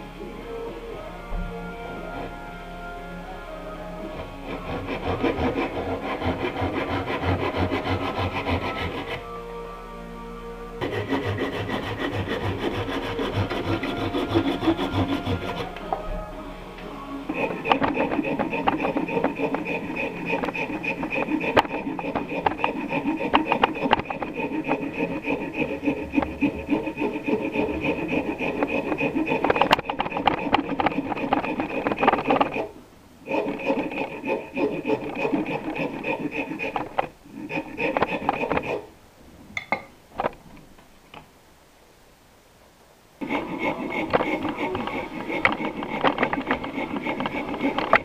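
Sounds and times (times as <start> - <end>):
hand rasp scraping wood: 4.2 - 9.3, 10.8 - 16.2, 17.3 - 38.9, 43.2 - 48.0.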